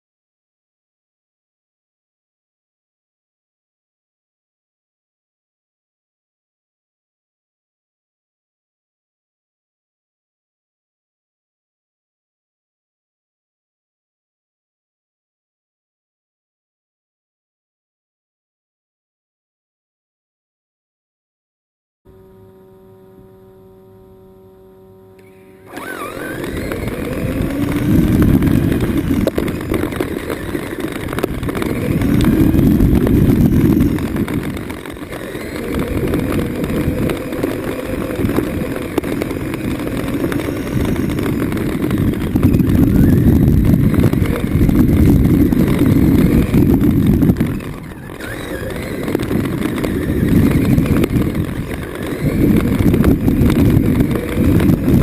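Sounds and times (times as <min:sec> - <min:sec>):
heavy rumble: 0:22.1 - 0:55.0
steady low hum: 0:22.1 - 0:55.0
toy truck motor whining: 0:22.1 - 0:55.0.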